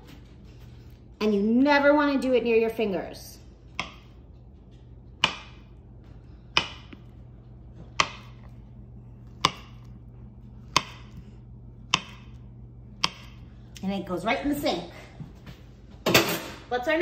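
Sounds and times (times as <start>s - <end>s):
knife chopping on cutting board: 3.7s - 4.2s, 5.2s - 5.7s, 6.5s - 7.1s, 7.7s - 8.5s, 9.2s - 12.4s, 13.0s - 13.5s.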